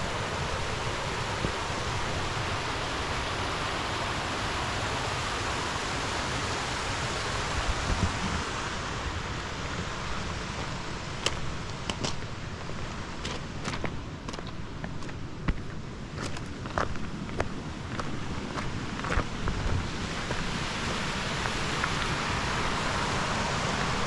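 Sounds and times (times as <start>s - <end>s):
flowing water rushing: 0.0s - 24.0s
footsteps: 13.2s - 20.5s.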